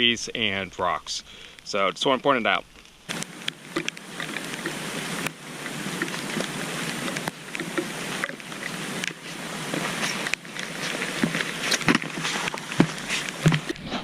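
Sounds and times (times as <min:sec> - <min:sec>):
rain hiss: 0:00.0 - 0:13.9
footsteps crunching on wet trail: 0:02.7 - 0:13.8.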